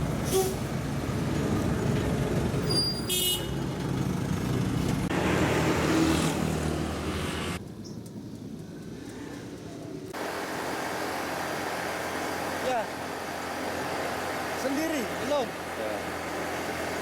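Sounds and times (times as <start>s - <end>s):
traffic engine rumble: 0.0s - 17.0s
vehicle horn toot: 2.7s - 3.6s.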